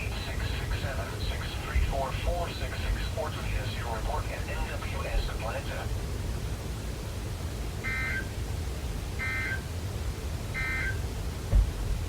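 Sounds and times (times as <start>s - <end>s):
low radio hum: 0.0s - 7.2s
low thump: 11.5s - 12.0s.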